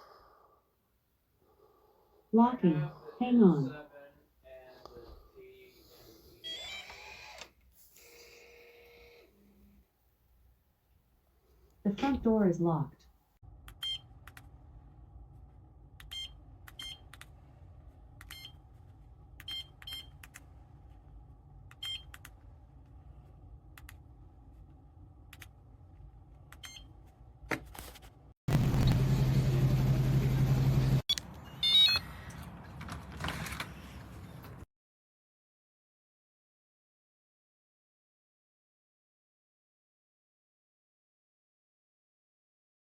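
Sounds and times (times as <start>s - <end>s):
loud steady low hum: 28.5s - 31.0s
keypad button beeps: 31.1s - 32.1s.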